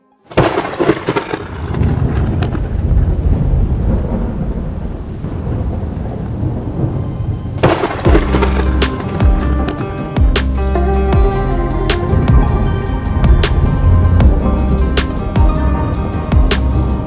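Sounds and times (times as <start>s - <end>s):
thunder rumbling: 0.3s - 10.6s, 11.2s - 17.0s
rain: 0.3s - 11.0s
music with a beat: 8.1s - 17.0s.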